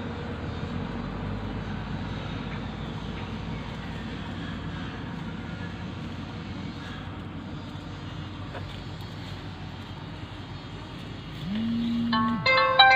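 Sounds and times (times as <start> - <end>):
low engine-like drone: 0.0 - 12.9
music with rising low tone: 11.4 - 12.9.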